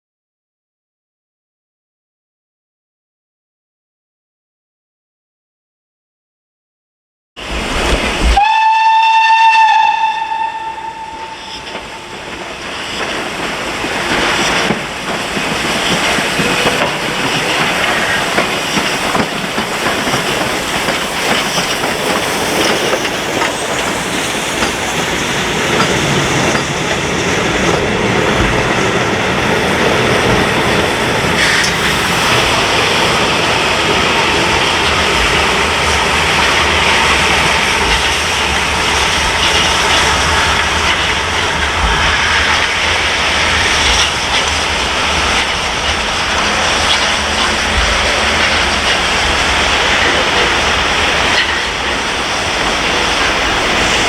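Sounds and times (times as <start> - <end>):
train running past: 7.4 - 54.0
steam locomotive whistle: 8.2 - 12.4.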